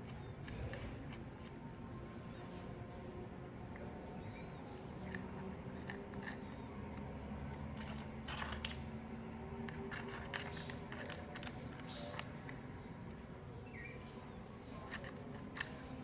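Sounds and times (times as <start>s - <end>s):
small clicks: 5.0s - 8.9s, 9.6s - 13.2s, 14.7s - 16.0s
objects rustling when handled: 9.6s - 13.1s, 14.4s - 16.0s.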